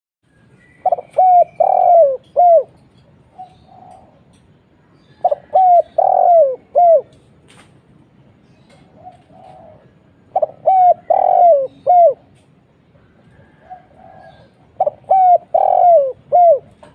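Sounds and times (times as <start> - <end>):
dove cooing: 0.8 - 4.3, 5.2 - 7.2, 8.8 - 12.4, 13.0 - 16.9.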